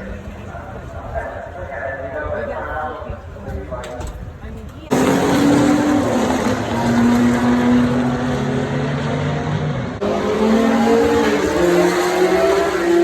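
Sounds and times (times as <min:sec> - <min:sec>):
engine accelerating: 0:04.9 - 0:13.0.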